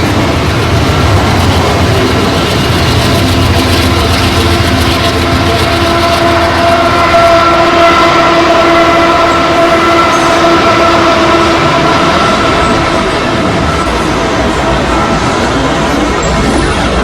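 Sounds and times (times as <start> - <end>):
freight train rumbling past: 0.0 - 17.0
locomotive air horn chord: 3.3 - 15.3.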